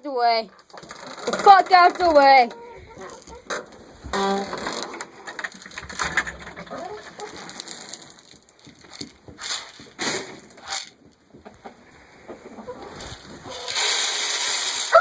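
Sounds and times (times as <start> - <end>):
chickens calling: 2.4 - 4.1, 5.2 - 7.7, 11.3 - 15.0
loud scrapes: 12.1 - 15.0.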